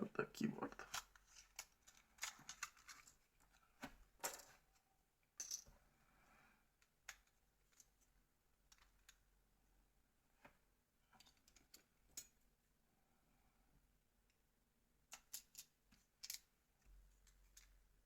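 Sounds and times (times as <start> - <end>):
plastic parts clicking and tapping: 0.7 - 4.7, 6.8 - 9.2, 10.4 - 12.4, 15.0 - 17.8.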